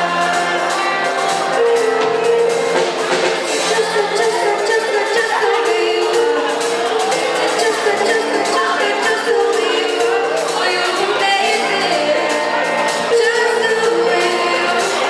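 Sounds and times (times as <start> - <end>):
drums and percussion: 0.0 - 15.0.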